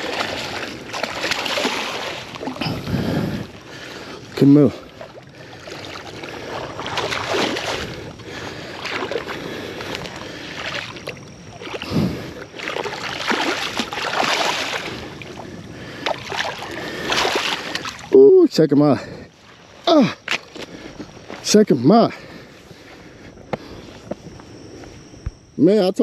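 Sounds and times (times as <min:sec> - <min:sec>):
water splashing and sloshing: 0:00.0 - 0:18.1.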